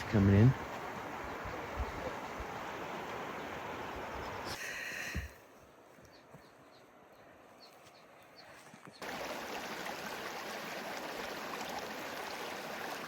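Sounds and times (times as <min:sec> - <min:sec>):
stream water rushing: 0:00.0 - 0:04.6, 0:09.0 - 0:13.0.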